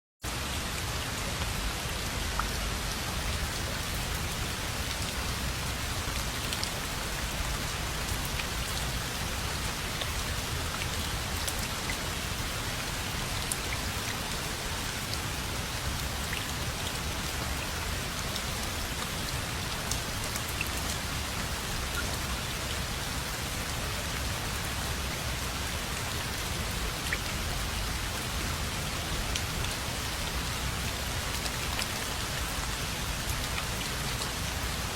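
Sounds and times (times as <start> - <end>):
rain falling: 0.2 - 34.9.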